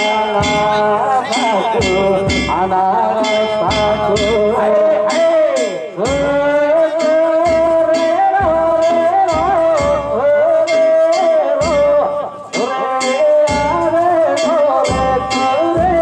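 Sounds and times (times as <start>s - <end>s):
hand gongs clanking: 0.0s - 6.4s
heavy drum strokes: 0.0s - 16.0s
wavering melody line: 0.0s - 16.0s.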